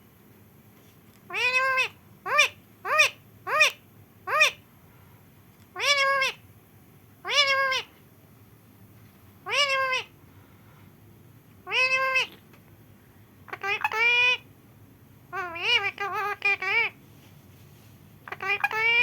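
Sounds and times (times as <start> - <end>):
parrot meowing: 1.3 - 4.6, 5.8 - 6.4, 7.2 - 7.9, 9.4 - 10.1, 11.6 - 12.4, 13.5 - 14.5, 15.3 - 17.0, 18.2 - 19.0.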